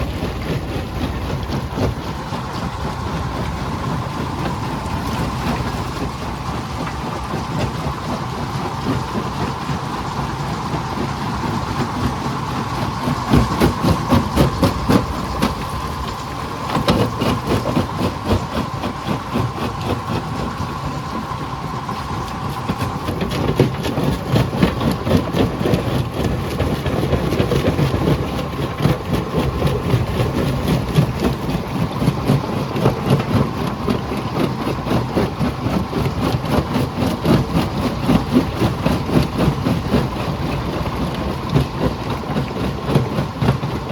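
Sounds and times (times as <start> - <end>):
jaw crusher crushing rock: 11.1 - 21.3, 22.1 - 43.9.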